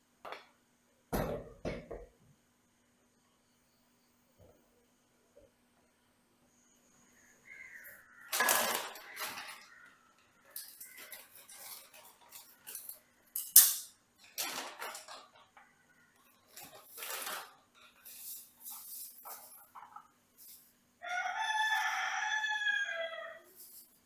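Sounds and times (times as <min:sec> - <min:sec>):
dishes and utensils clattering: 0:08.3 - 0:20.1
sharp clink: 0:13.4 - 0:14.0.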